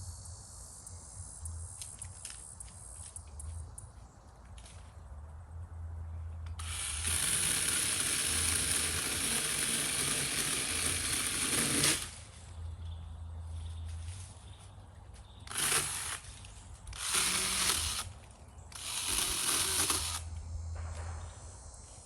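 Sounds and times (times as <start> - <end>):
mini chainsaw cutting wood: 6.5 - 12.4, 15.4 - 20.4.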